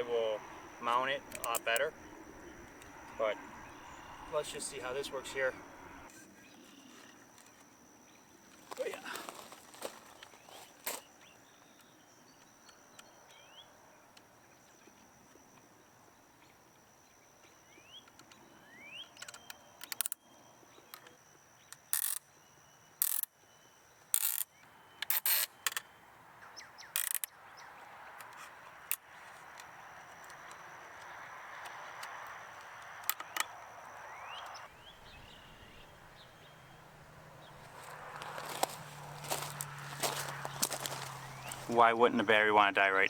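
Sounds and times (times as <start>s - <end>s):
faint bird chirps: 0.0s - 9.5s, 10.1s - 25.0s, 33.2s - 43.0s
zip ties ratcheted tight: 22.0s - 22.2s, 23.0s - 23.3s, 24.2s - 24.4s, 27.0s - 27.3s.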